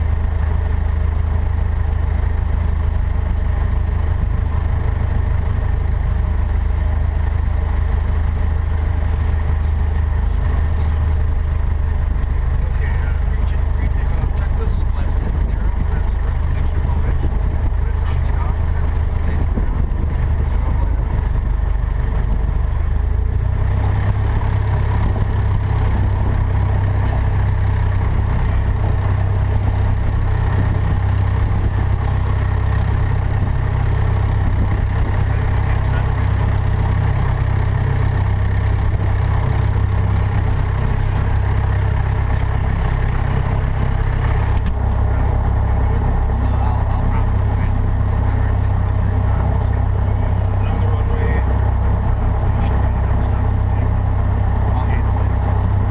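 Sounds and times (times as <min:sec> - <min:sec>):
light aircraft engine and propeller: 0:00.0 - 0:55.9.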